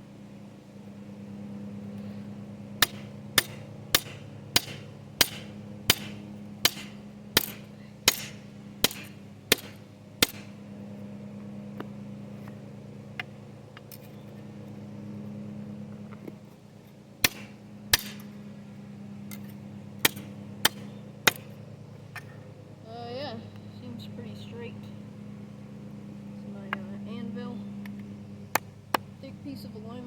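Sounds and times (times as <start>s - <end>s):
low hum: 0.0s - 30.0s
hammer striking metal: 2.8s - 10.6s, 17.2s - 18.4s, 19.3s - 21.6s.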